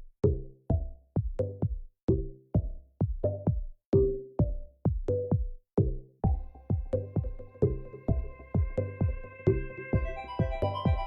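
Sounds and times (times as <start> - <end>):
electronic music with drum-machine beat: 0.0 - 11.0.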